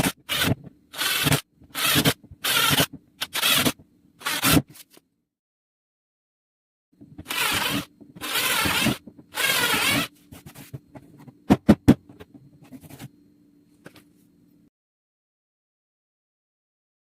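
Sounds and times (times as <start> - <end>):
faint steady hum: 0.0 - 5.3, 7.0 - 14.7.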